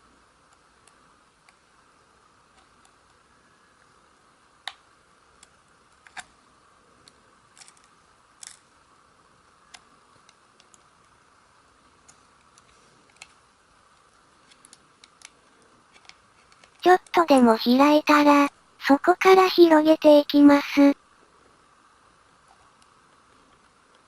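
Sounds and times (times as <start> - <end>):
faint steady hiss: 0.0 - 24.0.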